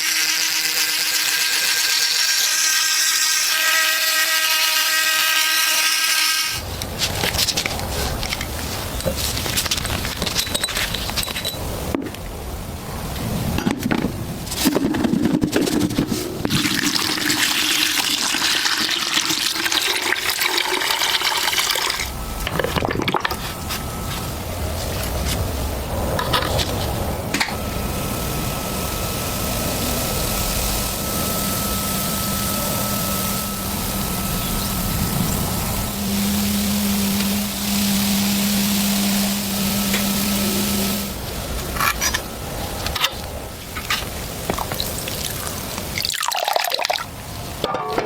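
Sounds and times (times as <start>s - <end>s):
water running and splashing: 44.2s - 47.1s.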